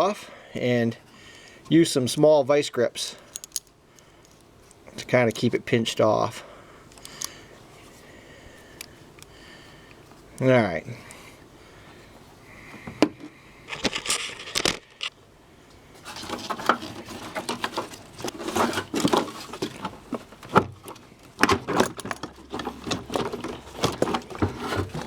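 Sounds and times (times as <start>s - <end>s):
tools and plastic parts clicking: 3.2s - 5.4s, 6.9s - 7.4s, 16.1s - 25.0s.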